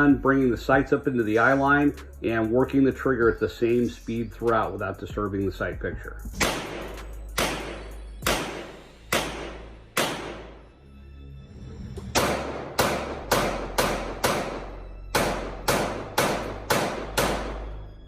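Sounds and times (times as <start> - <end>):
handgun shots echoing: 6.4 - 10.6, 12.2 - 17.8.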